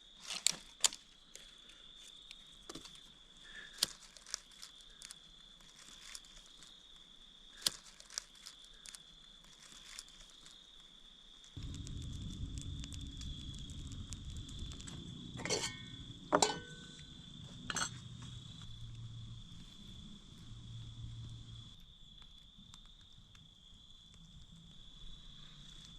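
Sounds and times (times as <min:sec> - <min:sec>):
insect trill: 0:00.0 - 0:25.9
small fire crackling: 0:00.0 - 0:25.9.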